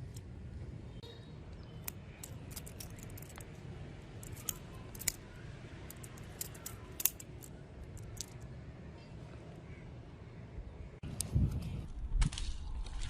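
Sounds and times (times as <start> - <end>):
light metallic clicks: 1.5 - 3.6, 4.2 - 5.3, 5.9 - 8.5.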